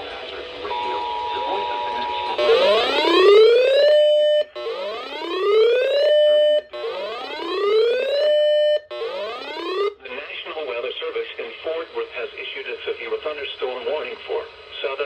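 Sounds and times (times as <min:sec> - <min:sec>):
electronic whooping alarm: 0:02.4 - 0:10.0.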